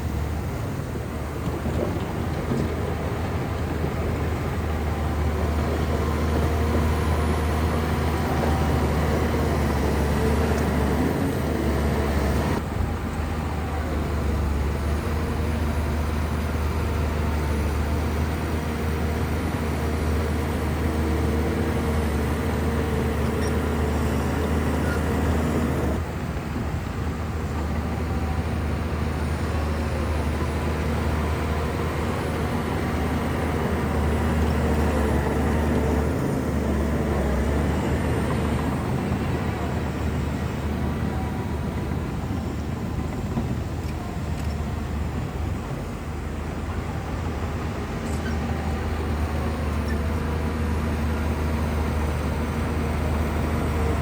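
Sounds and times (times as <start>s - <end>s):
bulldozer diesel engine droning: 0.0s - 54.0s.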